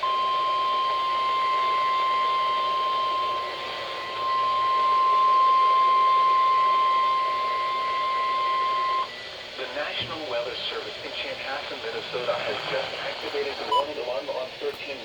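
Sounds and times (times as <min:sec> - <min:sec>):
weather radio alarm tone: 0:00.0 - 0:09.2.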